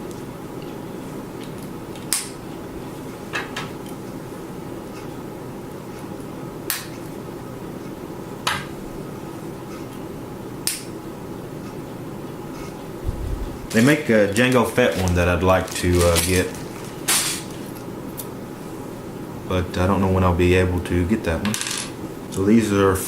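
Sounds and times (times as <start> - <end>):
steady background hum: 0.0 - 23.0.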